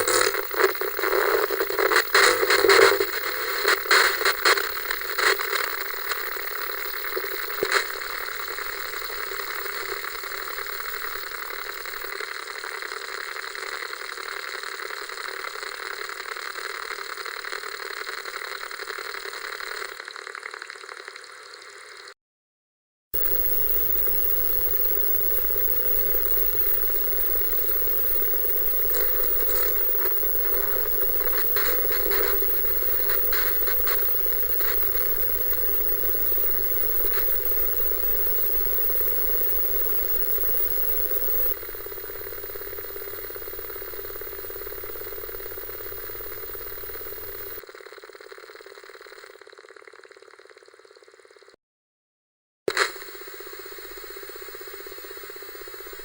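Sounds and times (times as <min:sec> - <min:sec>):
buzzing hum: 0:00.0 - 0:12.0, 0:23.2 - 0:47.6
static crackling bursts: 0:00.0 - 0:12.1, 0:23.2 - 0:47.6
tv static hiss: 0:00.0 - 0:12.6, 0:23.2 - 0:47.6, 0:52.7 - 0:56.0.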